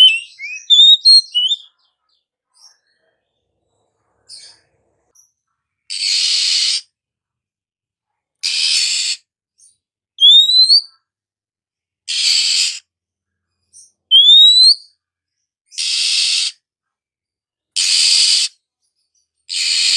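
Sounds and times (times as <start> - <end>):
bird rasping calls: 0.0 - 1.7
bird whistling: 0.0 - 1.7, 10.2 - 10.9, 14.1 - 14.8.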